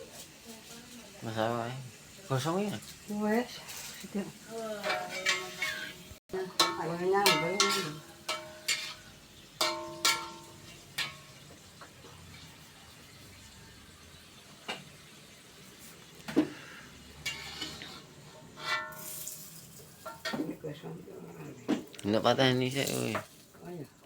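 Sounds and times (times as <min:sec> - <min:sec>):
faint sizzle: 0:00.0 - 0:24.0
metal spatula knocking on pan: 0:04.8 - 0:09.0, 0:09.6 - 0:11.6.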